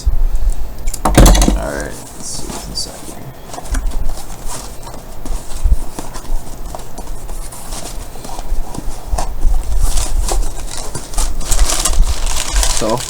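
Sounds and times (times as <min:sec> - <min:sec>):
packing paper tearing and rustling: 0:01.6 - 0:13.0.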